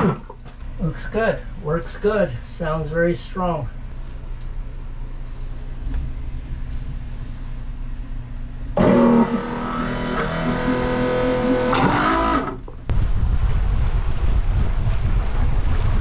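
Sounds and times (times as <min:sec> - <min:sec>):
low steady rumble: 0:00.0 - 0:16.0
wind buffeting microphone: 0:12.9 - 0:16.0
water wash from boat: 0:13.0 - 0:16.0.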